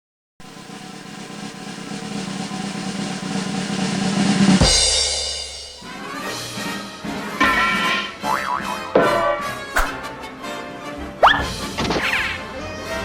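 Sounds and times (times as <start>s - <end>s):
drum roll: 0.4s - 7.8s
orchestral cartoon music: 2.0s - 13.0s.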